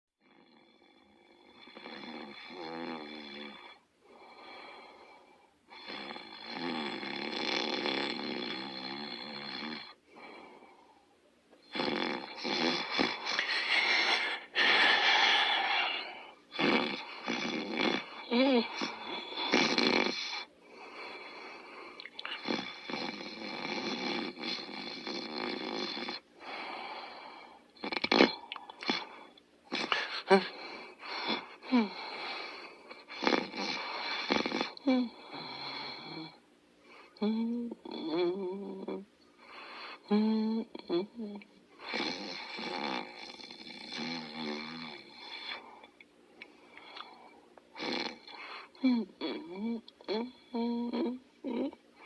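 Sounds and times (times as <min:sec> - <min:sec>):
person snoring: 0:00.2 - 0:10.8, 0:11.7 - 0:21.4, 0:22.2 - 0:36.4, 0:39.7 - 0:45.9, 0:47.8 - 0:52.0
quiet breath: 0:03.7 - 0:05.7, 0:09.9 - 0:11.3, 0:12.3 - 0:17.4, 0:20.2 - 0:22.4, 0:26.4 - 0:27.8, 0:28.5 - 0:37.3, 0:39.3 - 0:40.2, 0:45.1 - 0:47.5, 0:48.3 - 0:49.2
rattling snore: 0:11.7 - 0:18.1, 0:33.1 - 0:34.8.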